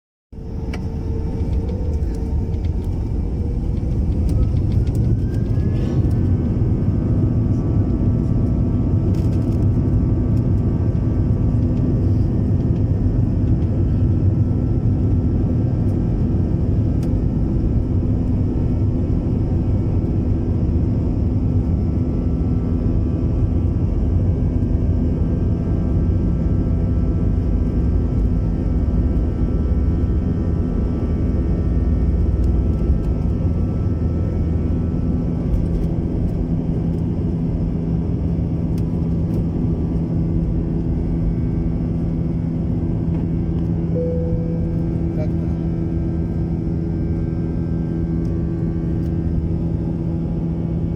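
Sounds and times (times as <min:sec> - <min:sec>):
jet engines rumbling: 0:00.4 - 0:22.2
jet engine whine rising: 0:00.4 - 0:50.9.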